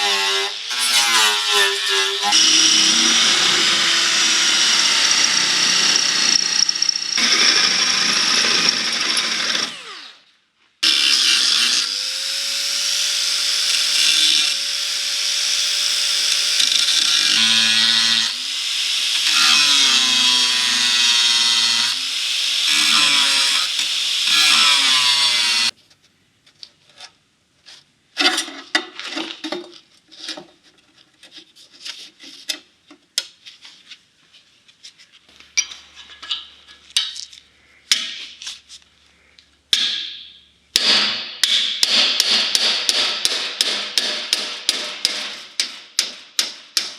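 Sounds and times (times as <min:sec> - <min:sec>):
power tool on sheet metal: 0:00.0 - 0:10.2, 0:10.8 - 0:25.7.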